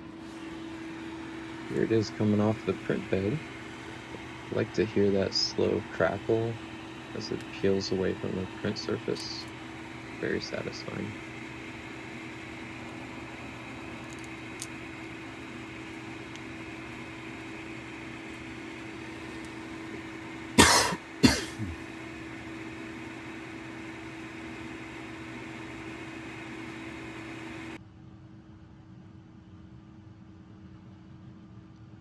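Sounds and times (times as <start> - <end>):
fan hum: 0.0 - 27.8
person coughing: 20.6 - 21.9.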